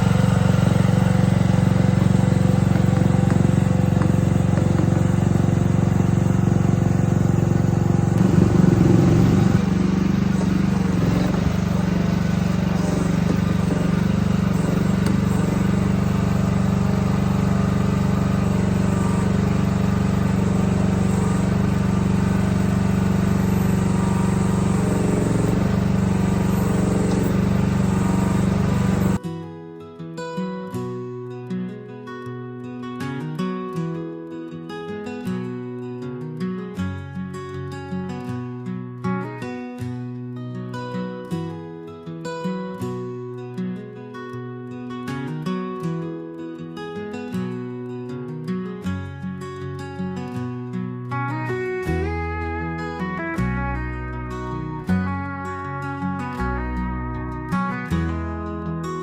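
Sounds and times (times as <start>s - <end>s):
engine running: 0.0s - 29.2s, 51.2s - 58.9s.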